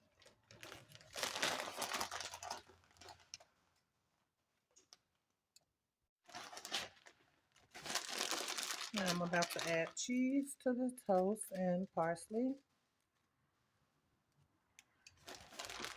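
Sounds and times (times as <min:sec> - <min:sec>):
food packaging crinkling: 0:00.0 - 0:03.6, 0:06.3 - 0:11.9, 0:15.2 - 0:15.9.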